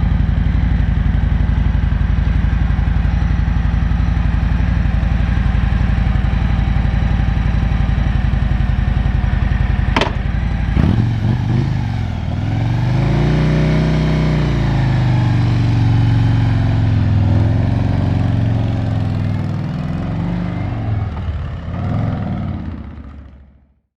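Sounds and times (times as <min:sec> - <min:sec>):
motorbike engine running: 0:00.0 - 0:23.7
sharp click: 0:10.0 - 0:10.3.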